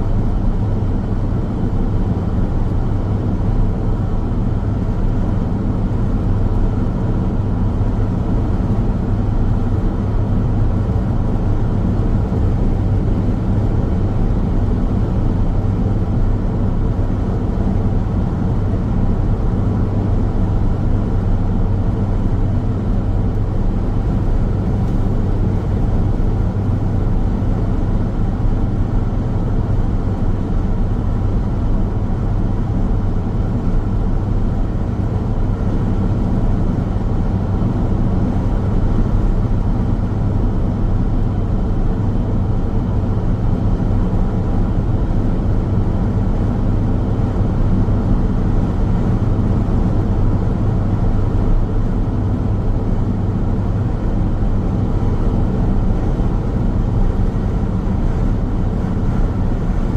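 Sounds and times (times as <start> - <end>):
car road noise rumble: 0.0 - 59.9
steady low hum: 0.0 - 59.9.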